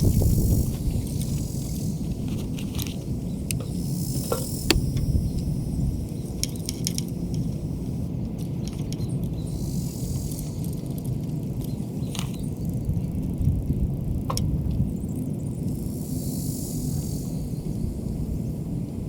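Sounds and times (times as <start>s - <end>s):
steady low rumble: 0.0s - 6.4s.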